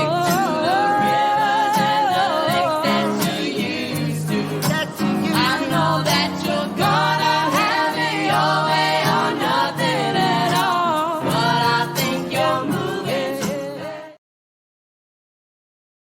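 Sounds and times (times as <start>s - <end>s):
live band playing: 0.0s - 14.1s
voices singing in harmony: 0.0s - 14.2s.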